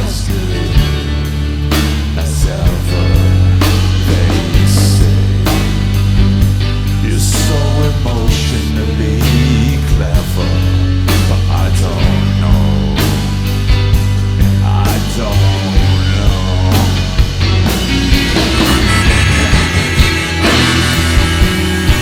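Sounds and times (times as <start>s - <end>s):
rock band playing live: 0.0s - 22.0s
sustained bass guitar notes: 0.0s - 22.0s
drum hits: 17.8s - 22.0s.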